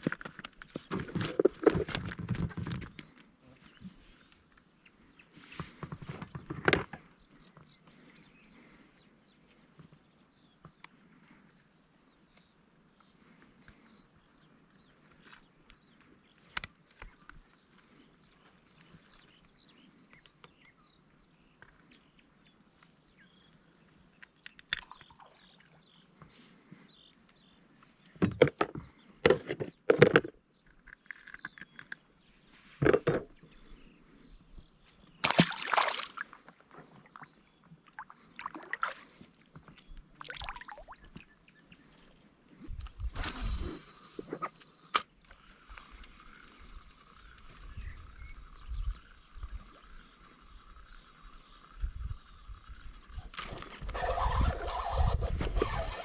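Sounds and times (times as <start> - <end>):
faint bird calls: 31.3 - 56.0.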